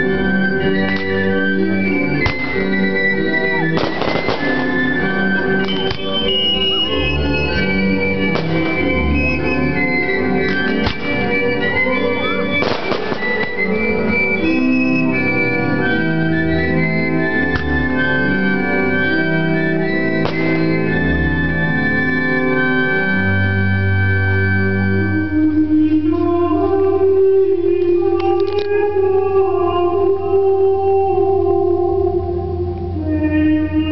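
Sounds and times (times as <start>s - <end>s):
organ playing held chords: 0.0s - 33.9s
fireworks bangs: 2.1s - 14.0s, 20.2s - 21.0s.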